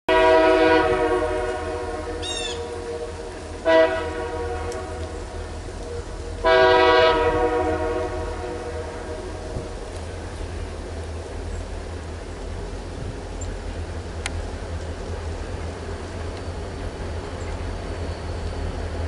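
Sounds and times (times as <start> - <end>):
locomotive air horn blasts: 0.1 - 9.8.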